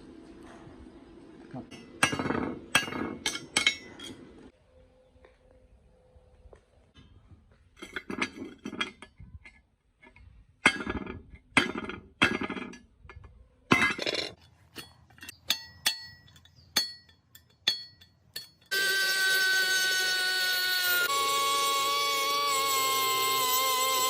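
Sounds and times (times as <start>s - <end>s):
metal clinks and knocks: 7.8s - 18.7s.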